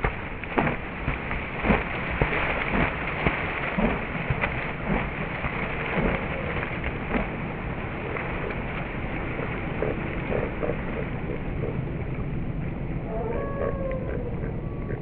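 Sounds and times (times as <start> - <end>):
lapping water: 0.0 - 15.0
ducks calling: 9.8 - 11.8, 13.1 - 15.0.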